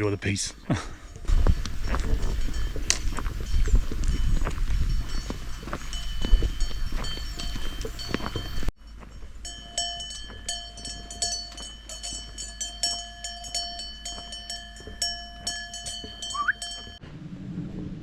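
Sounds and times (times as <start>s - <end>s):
cowbells clanking: 0.0s - 17.0s
short rising chirp: 16.3s - 16.6s.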